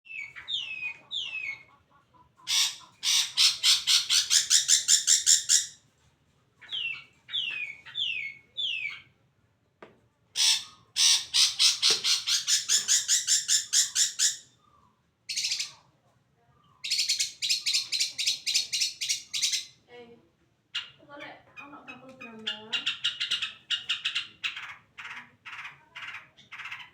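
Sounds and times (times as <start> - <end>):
bird harsh chattering rattles: 2.5 - 5.8, 10.4 - 14.4.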